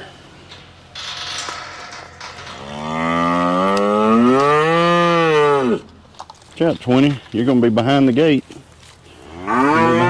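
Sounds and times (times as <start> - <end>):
cow mooing: 2.6 - 5.8, 9.3 - 10.0.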